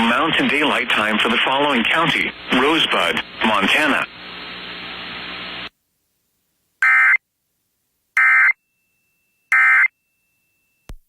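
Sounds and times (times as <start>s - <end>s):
radio hiss: 0.0s - 5.7s.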